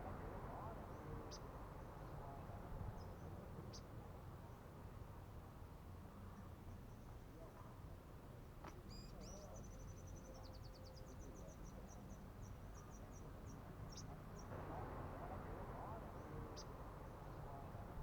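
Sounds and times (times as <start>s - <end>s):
bird twittering song: 8.9s - 14.5s
faint low rumble: 13.0s - 18.0s.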